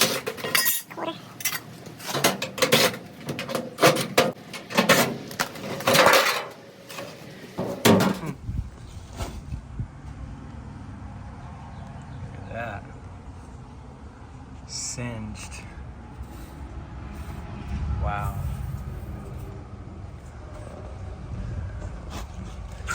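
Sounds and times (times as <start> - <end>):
metallic clanks and rattles: 0.0 - 8.3
steady low hum: 13.1 - 22.9.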